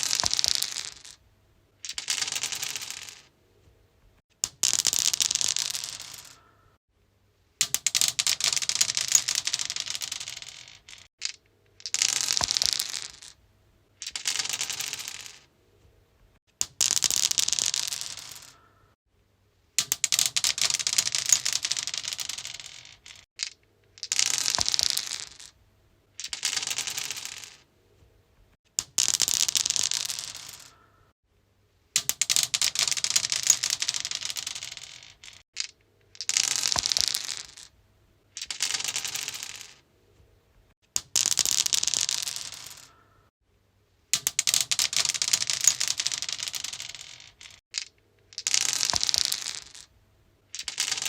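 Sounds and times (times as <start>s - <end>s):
dice clattering on stone: 0.0s - 1.2s, 1.8s - 3.3s, 4.4s - 6.5s, 7.6s - 13.4s, 14.0s - 15.5s, 16.6s - 18.6s, 19.8s - 25.6s, 26.2s - 27.6s, 28.7s - 30.8s, 32.0s - 39.8s, 40.9s - 43.0s, 44.1s - 49.9s, 50.5s - 51.0s.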